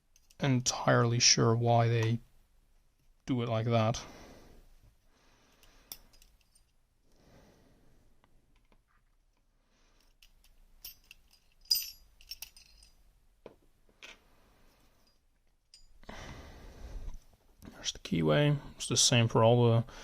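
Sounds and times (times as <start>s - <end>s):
small metal parts clinking: 0.1s - 0.4s, 5.6s - 6.8s, 10.0s - 13.0s.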